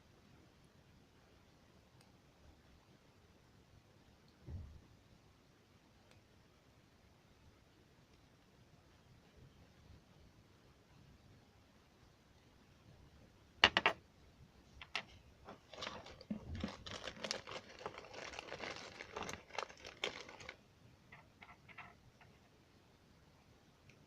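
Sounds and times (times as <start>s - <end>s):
crinkly rustling: 14.8s - 20.6s.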